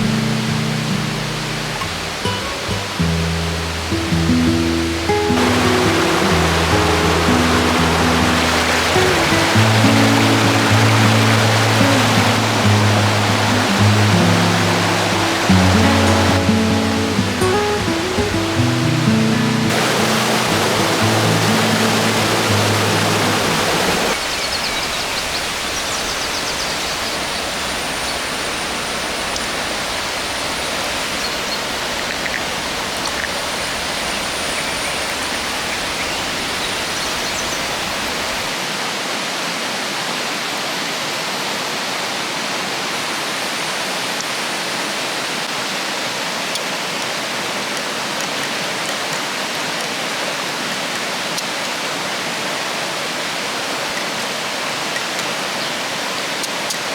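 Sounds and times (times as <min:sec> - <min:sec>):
river water rushing: 0:00.0 - 0:56.9
background music: 0:02.5 - 0:23.8.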